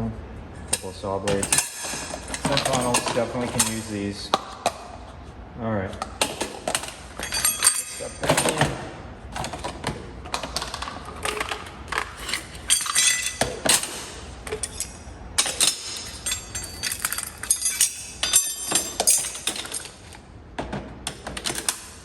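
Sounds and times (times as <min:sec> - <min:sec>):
metal tools clinking and clattering: 0:00.7 - 0:04.0, 0:06.2 - 0:08.8, 0:09.4 - 0:20.2.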